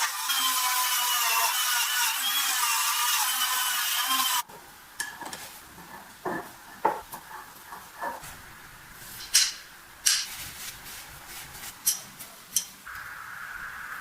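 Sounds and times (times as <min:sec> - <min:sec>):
hissing abrasive tool whine: 0:00.0 - 0:04.4.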